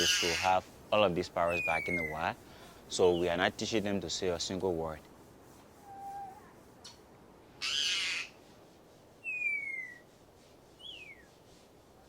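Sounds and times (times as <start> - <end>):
parrot harsh rasping call: 0.0 - 0.5, 7.6 - 8.4.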